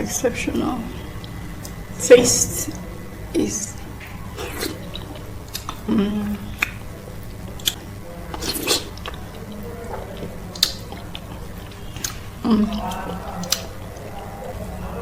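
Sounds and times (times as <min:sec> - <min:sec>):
chewing and wet mouth smacks: 0:04.0 - 0:14.7
mouth clicks: 0:06.4 - 0:06.8, 0:10.5 - 0:14.1.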